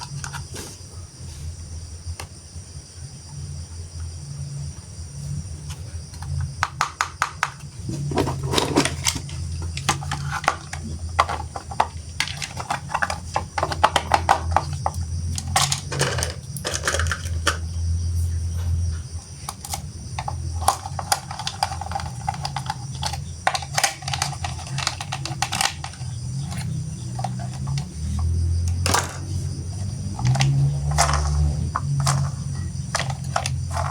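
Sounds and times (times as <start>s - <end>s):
steady low hum: 7.4s - 33.9s
plastic toy parts clicking: 8.6s - 17.6s, 19.5s - 29.2s, 29.8s - 33.9s.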